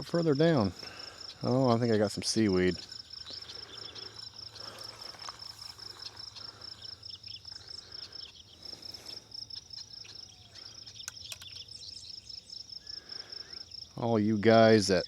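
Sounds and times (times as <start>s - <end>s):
insect chirping: 0.0s - 15.0s
faint sharp clicks: 10.9s - 11.6s.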